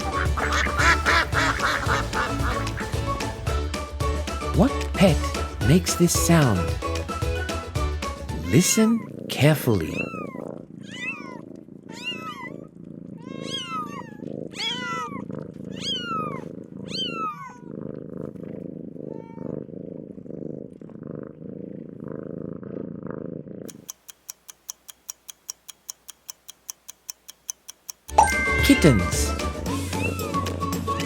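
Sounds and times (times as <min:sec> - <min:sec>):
kittens mewing: 0:00.0 - 0:03.5, 0:08.3 - 0:17.7, 0:28.2 - 0:30.4
steady ticking: 0:00.0 - 0:03.5, 0:23.7 - 0:29.4
cat purring: 0:00.0 - 0:03.6, 0:08.3 - 0:24.2.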